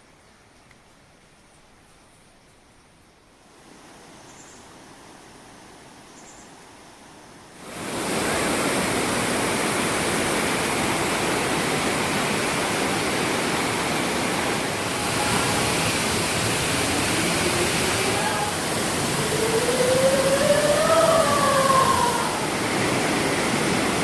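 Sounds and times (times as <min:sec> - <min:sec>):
waterfall rushing: 0:07.5 - 0:24.0.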